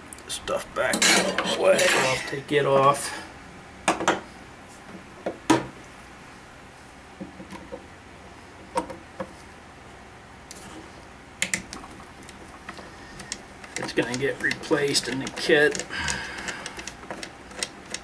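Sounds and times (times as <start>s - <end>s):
metal rifle parts clicking: 13.2s - 18.0s.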